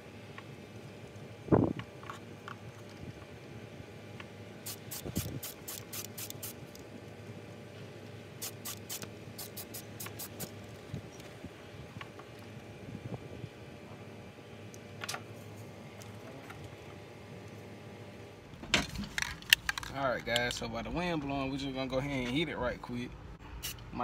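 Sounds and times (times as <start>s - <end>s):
spray paint can hissing bursts: 4.6s - 6.8s, 8.4s - 10.6s, 23.6s - 23.8s.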